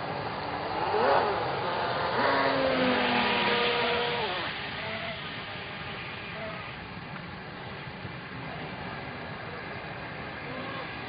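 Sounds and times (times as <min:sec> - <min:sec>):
toy boat motor whining: 0:00.9 - 0:06.9.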